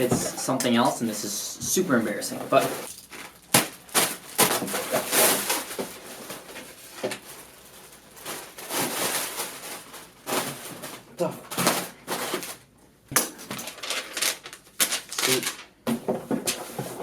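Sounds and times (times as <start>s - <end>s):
packaging rustling and tearing: 2.6s - 12.6s, 13.2s - 15.8s.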